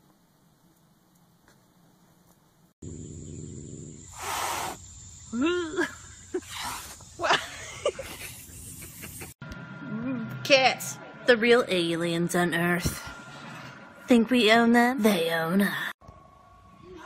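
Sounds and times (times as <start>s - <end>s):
cat hissing: 4.1s - 4.8s.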